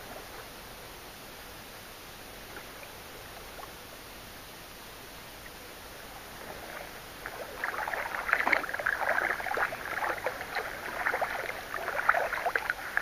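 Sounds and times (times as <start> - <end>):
paddles splashing in water: 6.3 - 13.0.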